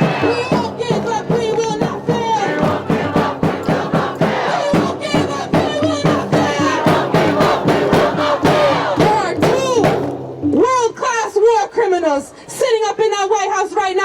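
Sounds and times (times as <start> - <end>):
crowd chanting: 0.0 - 9.6
rhythmic beat: 0.0 - 11.0.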